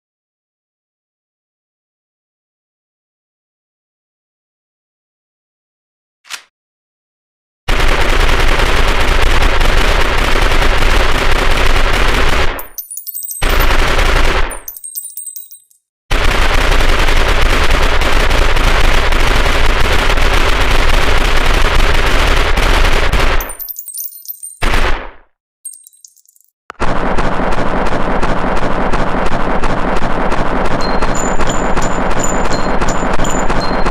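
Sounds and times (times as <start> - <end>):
submachine gun firing bursts: 7.7 - 12.8, 13.4 - 15.4, 16.1 - 23.6, 26.8 - 33.9
high metallic tinkling: 12.6 - 13.9, 14.5 - 15.8, 23.4 - 24.7, 25.7 - 26.5, 30.8 - 33.9.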